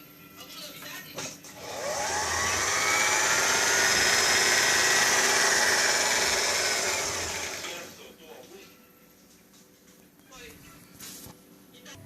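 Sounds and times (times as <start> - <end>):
sewing machine motor whine: 1.6 - 8.0.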